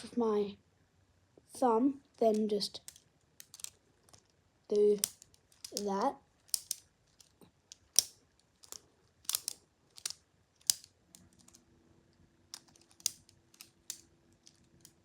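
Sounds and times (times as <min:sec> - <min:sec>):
plastic toy knife clacking: 0:02.9 - 0:03.7, 0:05.0 - 0:11.6, 0:12.6 - 0:15.0.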